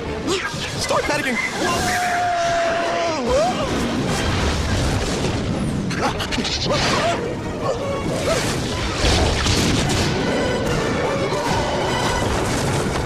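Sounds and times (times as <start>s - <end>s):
orchestral score: 0.0s - 13.0s
booms and crashes: 3.3s - 7.0s, 8.1s - 13.0s.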